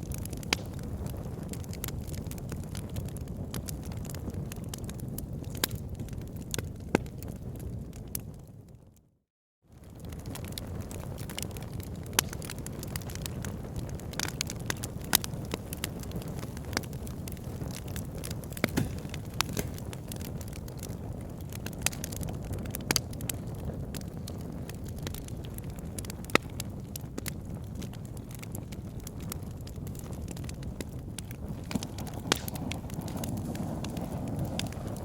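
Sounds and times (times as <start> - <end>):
fire crackling: 0.0 - 9.0, 9.7 - 35.0
sharp pops and snaps: 12.1 - 13.2, 14.2 - 20.6, 31.2 - 34.8.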